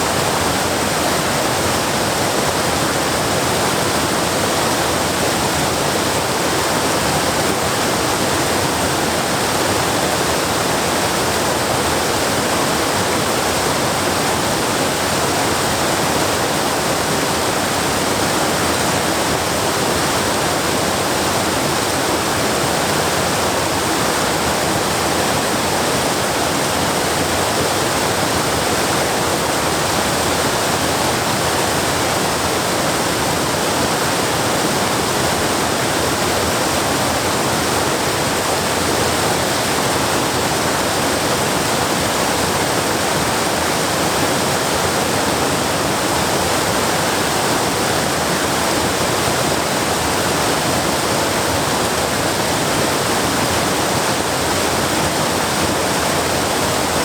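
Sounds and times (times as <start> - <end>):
waterfall rushing over rock: 0.0 - 57.0.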